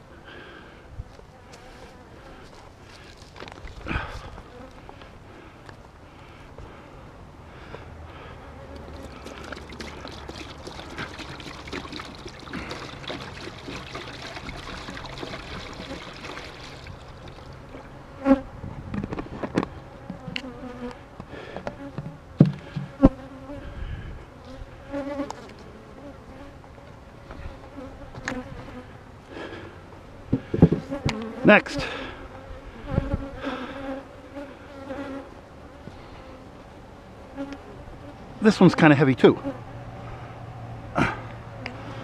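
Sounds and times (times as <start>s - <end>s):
bees buzzing: 8.2s - 18.5s.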